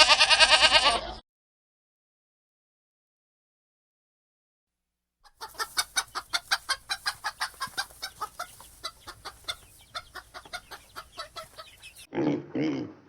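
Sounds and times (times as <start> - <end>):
chicken clucking: 5.2 - 12.1.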